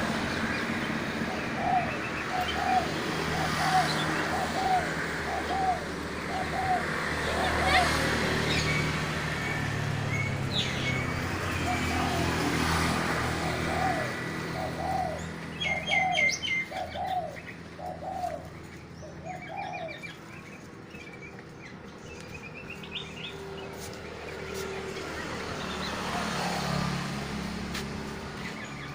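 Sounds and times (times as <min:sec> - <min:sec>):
dove cooing: 0:00.0 - 0:09.0, 0:10.8 - 0:20.6, 0:25.6 - 0:27.5
songbirds chirping: 0:00.0 - 0:28.9.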